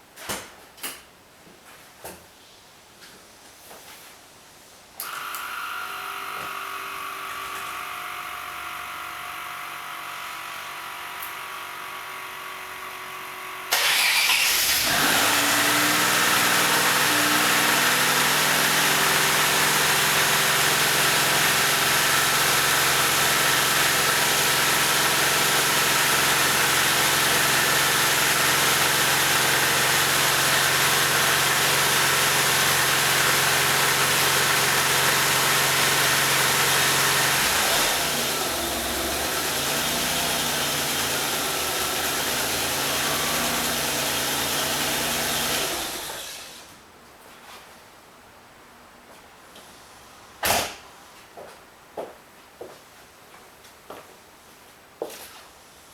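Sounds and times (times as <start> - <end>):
car engine cranking and idling: 13.1 - 46.3.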